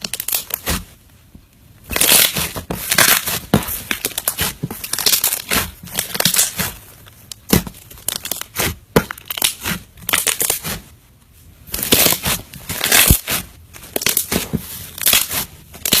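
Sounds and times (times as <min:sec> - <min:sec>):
slime crackling and squelching: 0:00.0 - 0:16.0.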